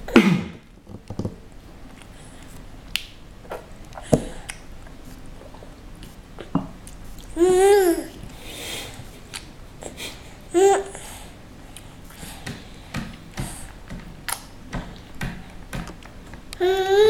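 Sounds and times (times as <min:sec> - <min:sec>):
child vocal sound: 0:07.4 - 0:08.2, 0:16.6 - 0:17.0.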